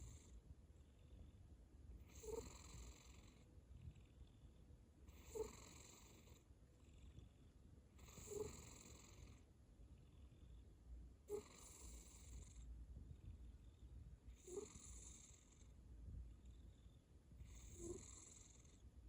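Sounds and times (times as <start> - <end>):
cat snoring: 0.0 - 0.4, 2.0 - 4.4, 5.0 - 7.4, 8.0 - 10.6, 11.2 - 12.7, 14.3 - 15.7, 16.4 - 18.9.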